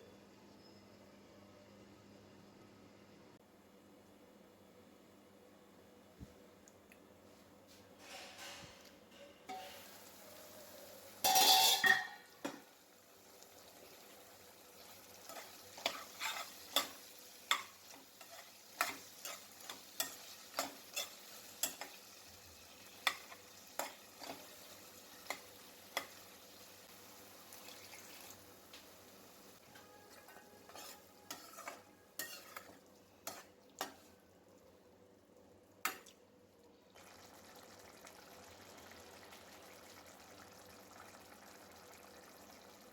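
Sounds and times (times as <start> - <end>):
low sizzling: 9.5 - 42.9
spatula scraping frying pan: 15.2 - 22.0, 30.0 - 34.0.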